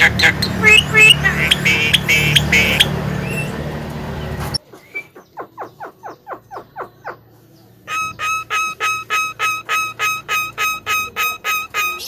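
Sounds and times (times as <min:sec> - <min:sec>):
bird calling downward-sliding notes: 0:00.0 - 0:03.7, 0:07.9 - 0:12.0
background hum and noise: 0:00.0 - 0:12.0.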